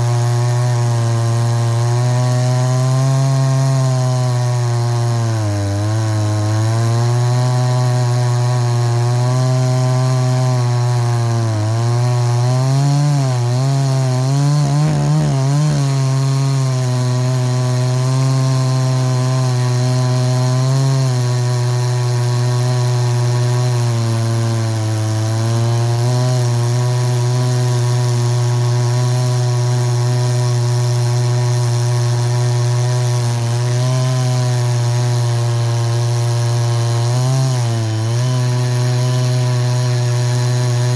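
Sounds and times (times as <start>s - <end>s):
chainsaw cutting at high speed: 0.0s - 40.9s.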